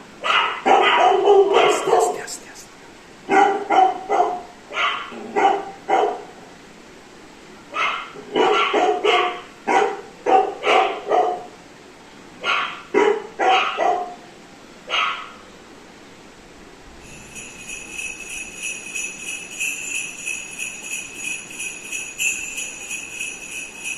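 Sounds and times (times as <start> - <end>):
dog barking: 0.2 - 2.3, 3.3 - 6.4, 7.7 - 11.5, 12.4 - 14.2, 14.9 - 15.4.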